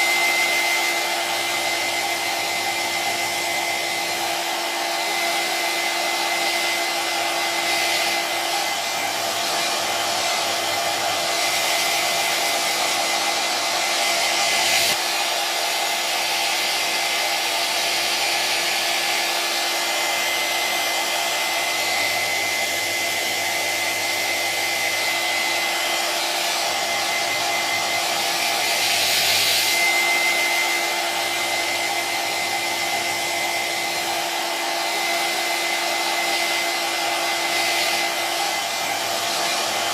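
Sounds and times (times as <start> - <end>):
hair dryer air rush: 0.0 - 39.9
hair dryer motor whine: 0.0 - 39.9.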